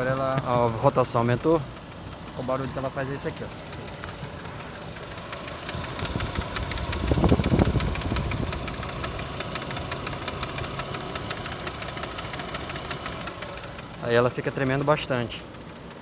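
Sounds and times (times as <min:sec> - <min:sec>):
cooling fan knocking: 0:00.0 - 0:16.0.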